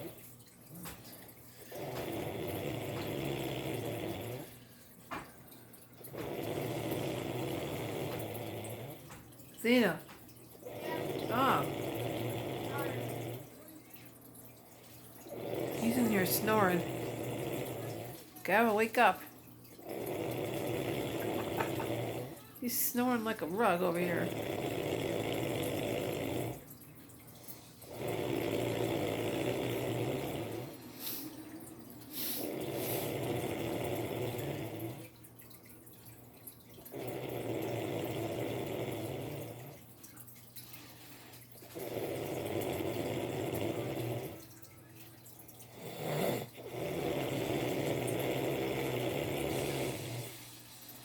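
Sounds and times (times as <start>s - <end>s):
snoring: 1.6s - 5.3s, 6.0s - 13.6s, 15.1s - 18.4s, 19.8s - 22.5s, 23.8s - 26.7s, 27.5s - 31.4s, 32.2s - 35.2s, 36.8s - 39.9s, 41.6s - 44.6s, 45.6s - 50.6s.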